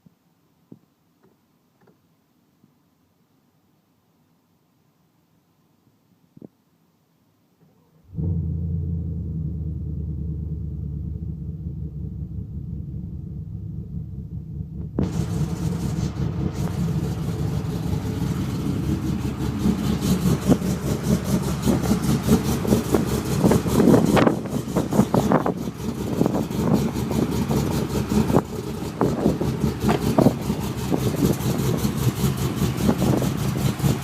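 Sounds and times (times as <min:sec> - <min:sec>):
truck engine idling with lope: 0:08.1 - 0:34.0.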